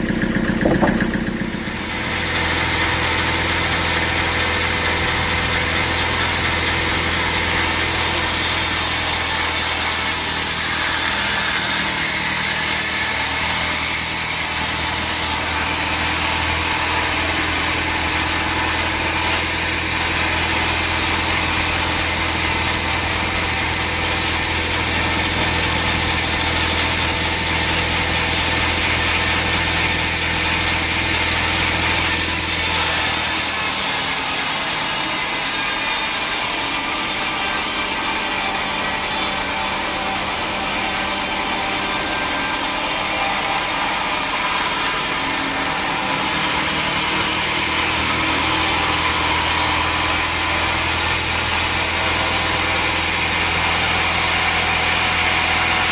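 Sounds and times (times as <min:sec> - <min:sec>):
low mechanical hum: 0:00.0 - 0:08.2
saw cutting through log: 0:00.0 - 0:55.9.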